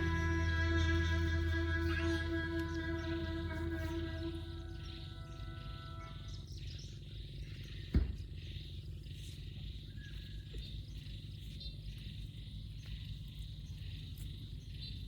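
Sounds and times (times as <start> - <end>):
held music notes: 0.0 - 6.3
low hum: 0.0 - 8.7
sharp thump: 7.9 - 8.2.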